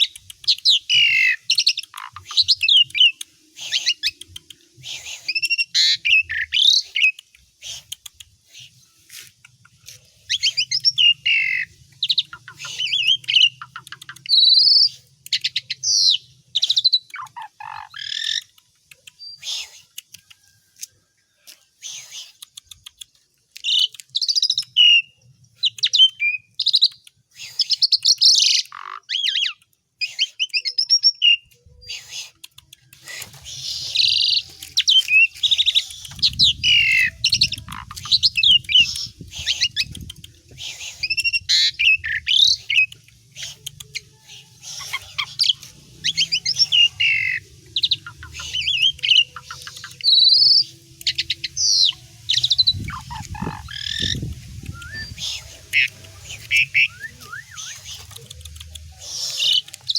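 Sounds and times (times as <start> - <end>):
bird singing varied song: 0.0 - 20.2, 21.8 - 59.9.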